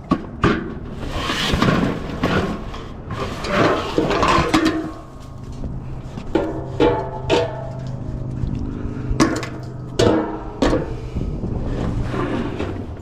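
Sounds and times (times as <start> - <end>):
scrap knocking and clattering: 0.0 - 8.5
low hum: 0.1 - 13.0
scraping: 0.4 - 13.0.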